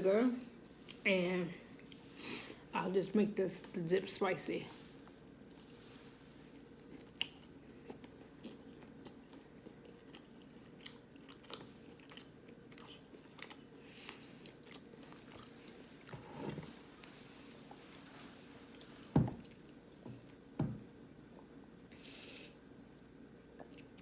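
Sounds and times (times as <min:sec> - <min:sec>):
person chewing and crunching: 0:06.4 - 0:16.3.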